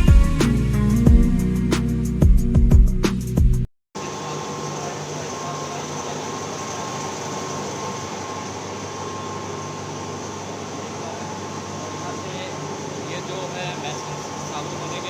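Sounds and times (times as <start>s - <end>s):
faint high whine: 4.0s - 15.0s
machinery humming: 4.0s - 15.0s.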